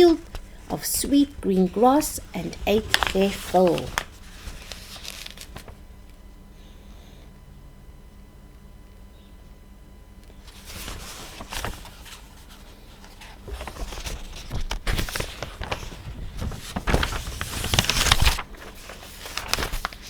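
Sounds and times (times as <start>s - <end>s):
rustling and handling noise: 0.0s - 6.2s, 10.3s - 20.0s.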